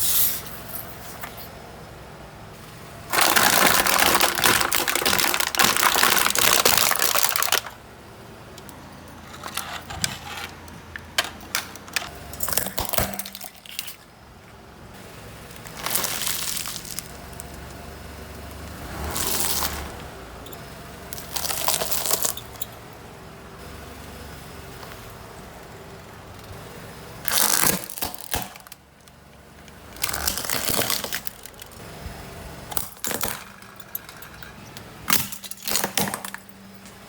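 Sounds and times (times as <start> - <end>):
tyre crunching objects: 3.1 - 7.8, 15.5 - 17.8, 18.4 - 20.1, 21.1 - 22.6, 27.2 - 28.8, 29.9 - 31.9.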